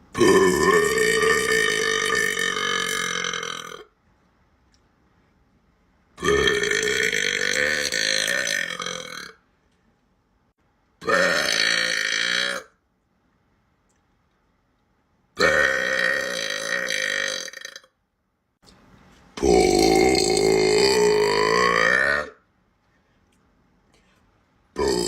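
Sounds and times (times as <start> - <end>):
girl belching: 0.2 - 3.8, 15.4 - 17.9, 19.4 - 22.4, 24.8 - 25.0.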